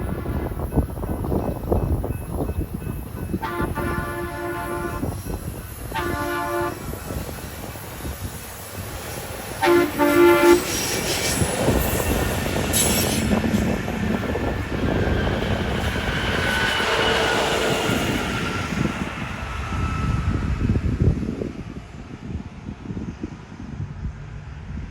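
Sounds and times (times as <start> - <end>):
track machines clattering on rails: 0.0 - 21.8
horn blasts: 3.4 - 5.2, 5.9 - 6.9, 9.6 - 10.8.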